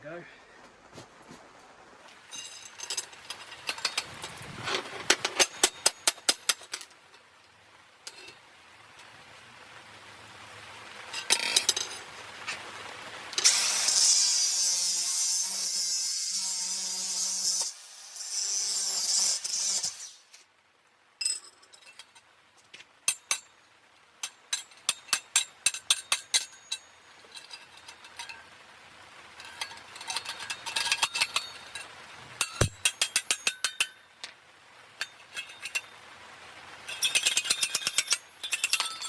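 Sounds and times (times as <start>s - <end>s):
sharp metallic knocks and clicks: 5.0s - 6.9s, 32.4s - 34.0s.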